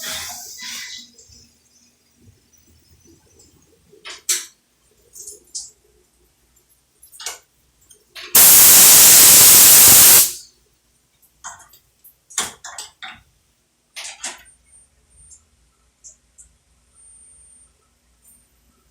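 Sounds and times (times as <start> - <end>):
short clicks: 8.4 - 10.3
loud hiss of air: 8.4 - 10.4.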